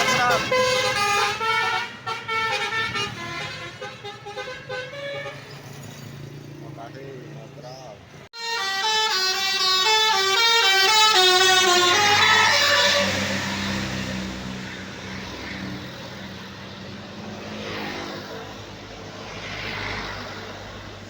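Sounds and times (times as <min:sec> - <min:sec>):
bus melody horn: 0:00.0 - 0:05.7, 0:08.4 - 0:14.1
bus engines droning: 0:00.0 - 0:19.6
vehicles passing: 0:00.0 - 0:21.0.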